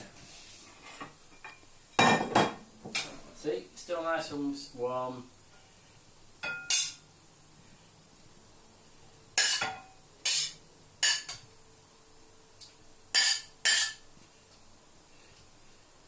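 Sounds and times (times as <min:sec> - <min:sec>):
spatula scraping pan and plates: 0:09.4 - 0:11.4, 0:13.2 - 0:14.0.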